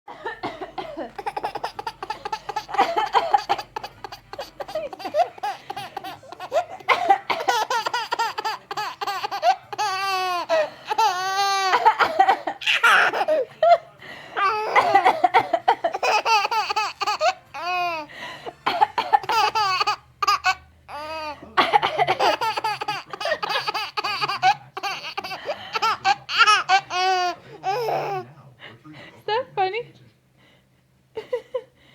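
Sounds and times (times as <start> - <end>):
woman coughing: 0.1 - 8.7, 11.7 - 13.4, 14.5 - 16.3, 18.6 - 19.6, 21.6 - 24.4
baby laughing: 1.1 - 13.5, 14.4 - 18.1, 19.0 - 28.2.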